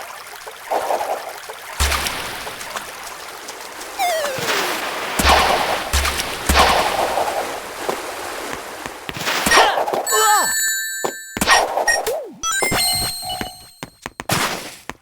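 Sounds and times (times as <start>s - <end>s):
loud bangs with deep thud: 5.2s - 7.6s.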